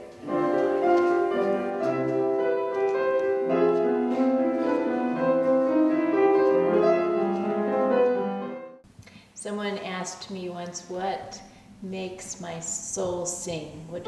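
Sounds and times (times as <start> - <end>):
classical piano music: 0.0 - 8.8.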